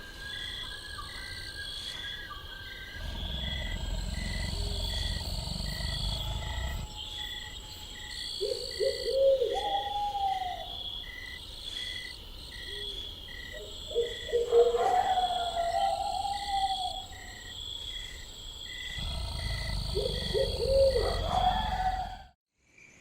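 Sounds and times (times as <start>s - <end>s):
insects chirping: 0.0s - 23.0s
high insect drone: 0.2s - 9.2s, 17.1s - 22.2s
owl-like hoots: 8.4s - 10.7s, 19.5s - 22.3s.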